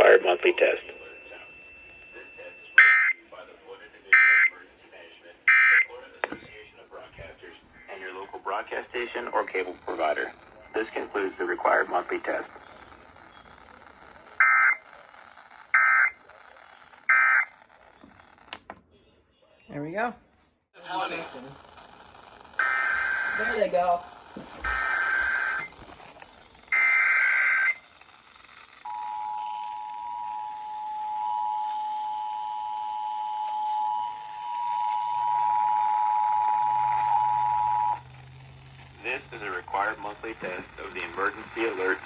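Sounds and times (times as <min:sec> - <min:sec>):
faint receiver hiss: 0:38.9 - 0:42.0.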